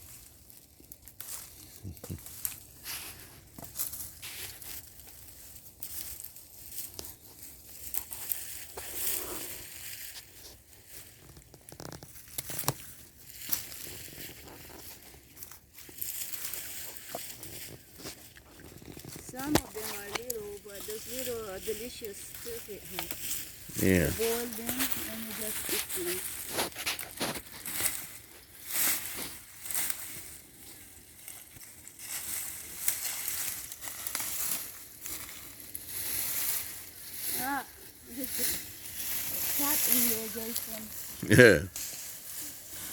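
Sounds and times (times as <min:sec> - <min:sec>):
rustling and crunching mulch: 0:00.0 - 0:42.9.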